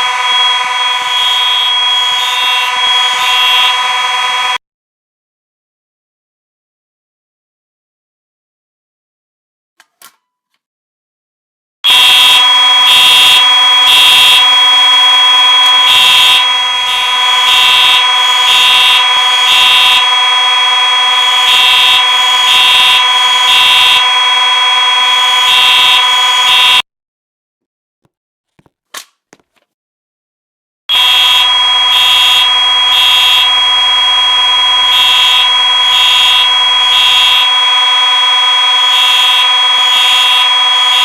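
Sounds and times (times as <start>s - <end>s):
pulsing alarm horn: 0.0s - 4.6s, 11.8s - 26.8s, 30.9s - 41.0s
steady buzzing fire alarm horn: 0.0s - 4.6s, 11.8s - 26.8s, 30.9s - 41.0s.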